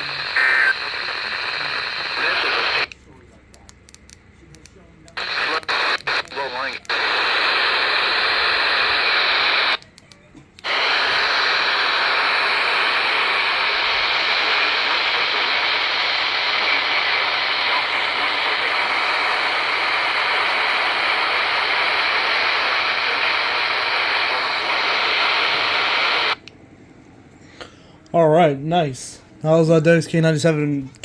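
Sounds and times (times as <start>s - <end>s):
radio static hiss: 0.0s - 2.9s, 5.1s - 9.8s, 10.6s - 26.4s.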